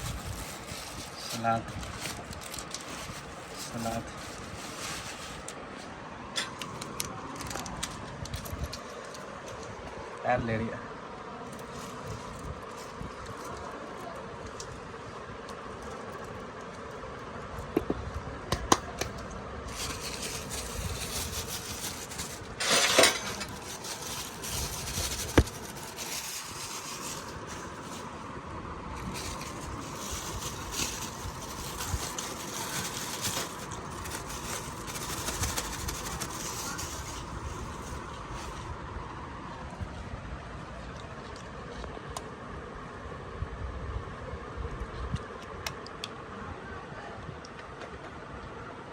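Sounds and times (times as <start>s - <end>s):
steady kitchen hum: 0.0s - 42.7s
metal utensils clinking: 19.7s - 28.0s.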